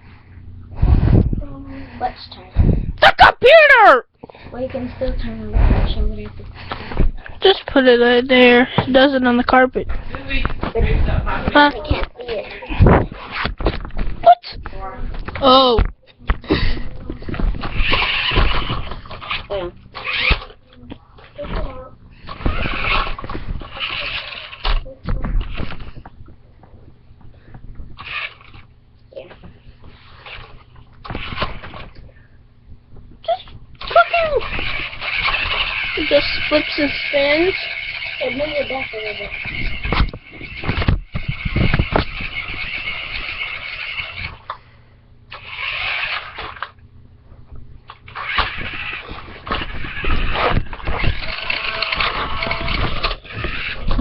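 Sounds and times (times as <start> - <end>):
toy car motors whirring: 11.4 - 13.6, 17.3 - 20.6, 21.4 - 26.0, 28.0 - 28.7, 30.1 - 31.9, 33.2 - 44.6, 45.3 - 46.8, 47.9 - 54.0.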